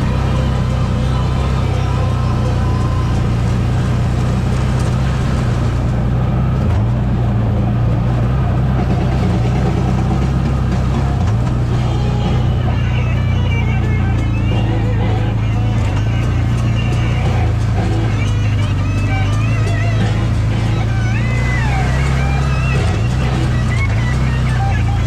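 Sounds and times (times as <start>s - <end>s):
atv engine running: 0.0s - 25.0s.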